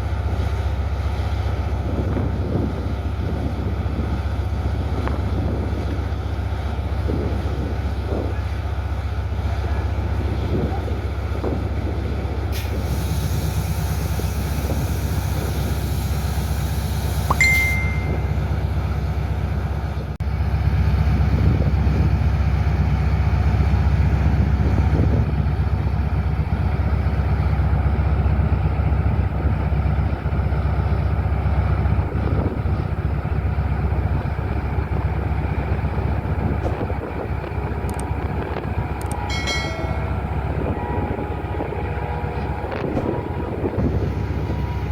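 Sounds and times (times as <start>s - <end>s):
train rumbling on rails: 0.0s - 44.9s
high-pitched tone: 17.3s - 18.6s, 39.0s - 43.2s.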